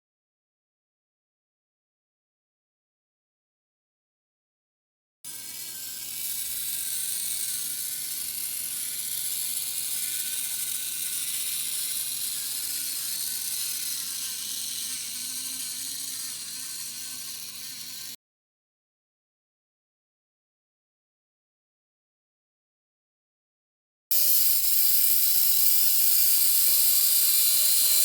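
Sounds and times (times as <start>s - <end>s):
model locomotive motor whirring: 5.3s - 18.2s, 24.1s - 28.0s.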